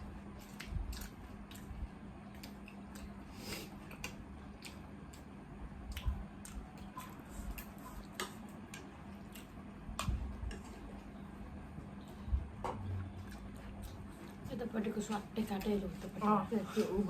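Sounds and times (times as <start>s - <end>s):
steady low hum: 0.0s - 17.0s
mouths chewing food: 0.2s - 11.2s.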